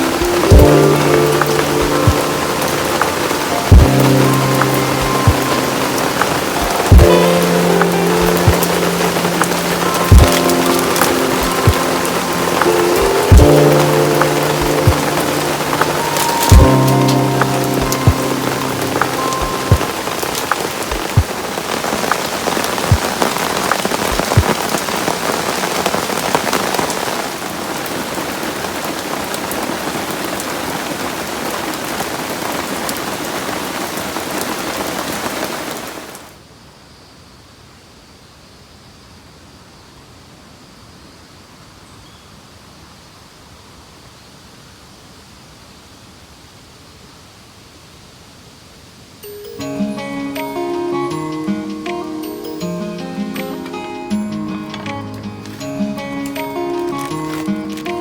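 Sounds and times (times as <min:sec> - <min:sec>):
raindrops ticking sharply: 0:00.0 - 0:36.3, 0:49.2 - 0:58.0
heavy rain falling: 0:00.0 - 0:36.5, 0:42.4 - 0:58.0
faint hiss: 0:00.0 - 0:58.0.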